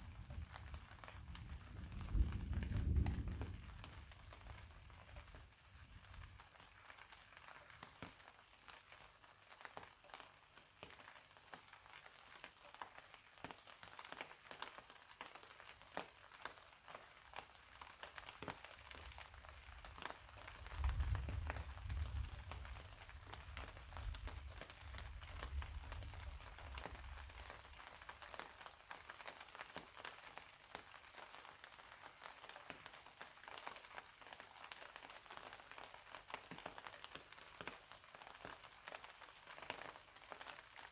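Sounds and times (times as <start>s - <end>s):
rain drops clicking: 0.0s - 40.9s
distant thunder rumble: 1.4s - 4.5s.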